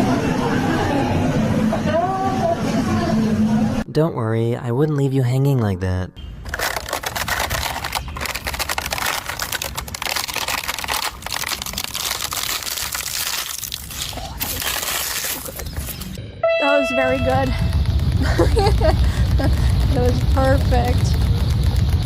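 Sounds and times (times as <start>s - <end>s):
crunching and crackling: 6.4s - 16.2s.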